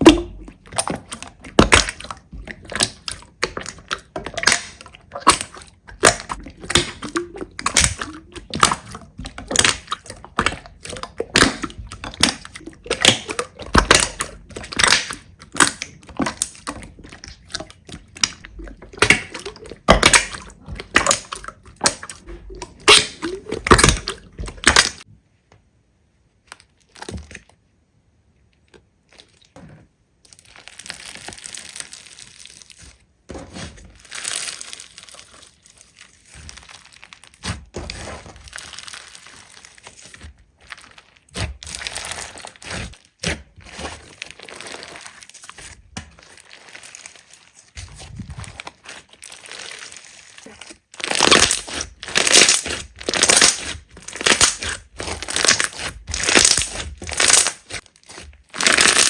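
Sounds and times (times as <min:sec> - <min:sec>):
slime crackling and popping: 0:00.0 - 0:25.1, 0:30.3 - 0:33.0, 0:33.6 - 0:59.0.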